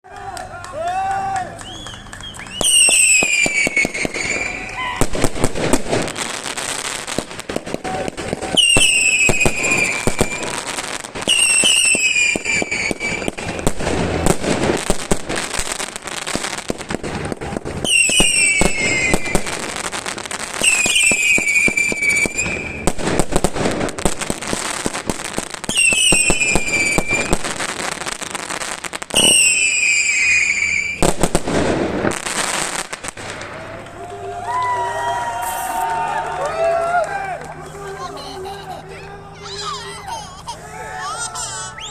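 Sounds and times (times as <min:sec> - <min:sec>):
firecrackers crackling and popping: 0:00.0 - 0:40.4
fireworks whistling shrieks: 0:01.6 - 0:14.9, 0:17.0 - 0:23.7, 0:25.7 - 0:27.5, 0:29.1 - 0:32.7, 0:34.7 - 0:36.0, 0:41.5 - 0:41.9.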